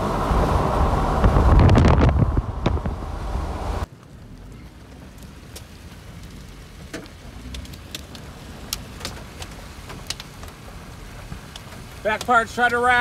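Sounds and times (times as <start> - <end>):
car rumble: 0.0 - 13.0
raindrops ticking on car: 3.8 - 13.0.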